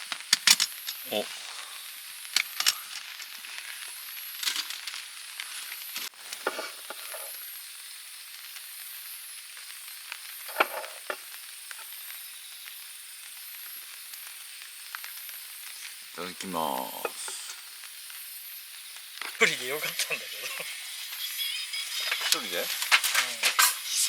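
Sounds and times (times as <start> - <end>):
campfire pops and crackles: 0.0 - 24.0
food sizzling in a pan: 0.0 - 24.0.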